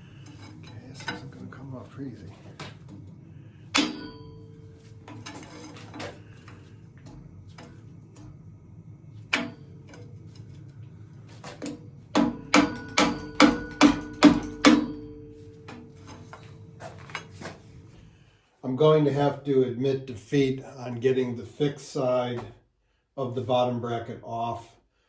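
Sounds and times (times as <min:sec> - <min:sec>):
mallet striking metal wrench: 0:03.7 - 0:04.6, 0:12.2 - 0:15.8.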